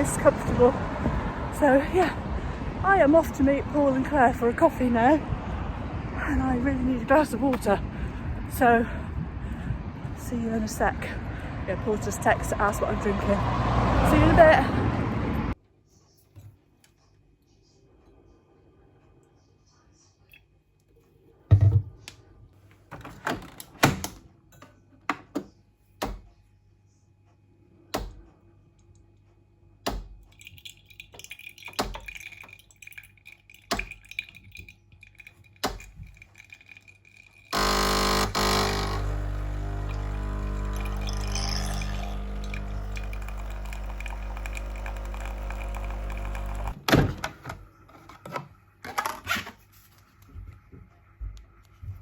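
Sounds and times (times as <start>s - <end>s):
machine humming and rushing: 37.6s - 46.8s.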